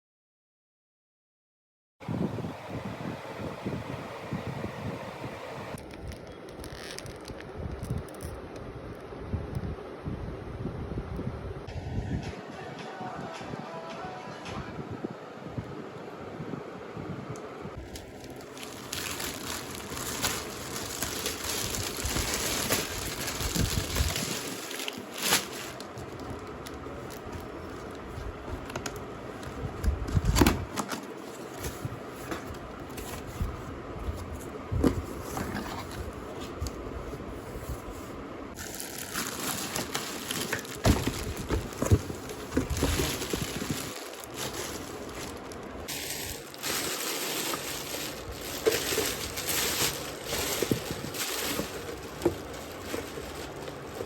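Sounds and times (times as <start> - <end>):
packaging crinkling and rustling: 5.8 - 8.4, 17.8 - 33.6, 38.6 - 54.0.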